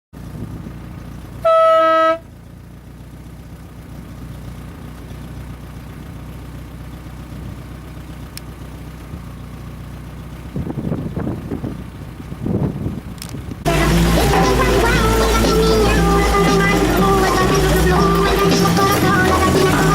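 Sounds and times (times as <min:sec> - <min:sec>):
horn toot: 0:01.4 - 0:02.3
low hum: 0:13.2 - 0:19.9.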